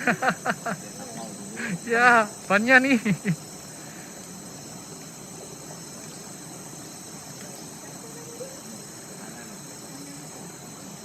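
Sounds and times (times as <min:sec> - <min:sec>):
insects droning: 0:00.0 - 0:11.0.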